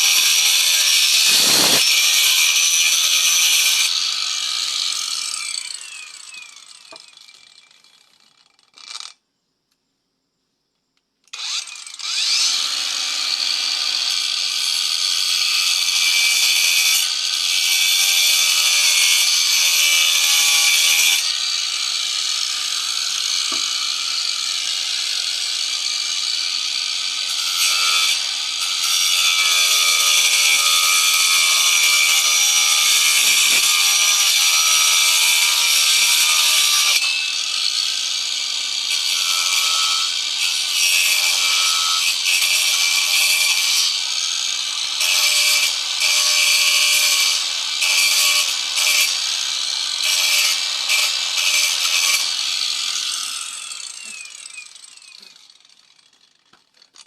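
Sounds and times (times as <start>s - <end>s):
tool cutting wood hiss: 0.0s - 7.8s, 15.5s - 24.8s
power tool motor hum: 0.0s - 9.2s, 11.3s - 14.2s.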